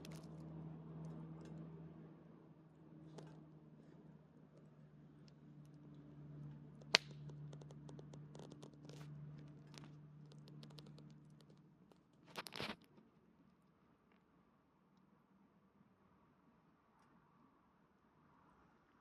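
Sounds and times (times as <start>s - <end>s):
campfire crackling and popping: 6.8s - 7.4s.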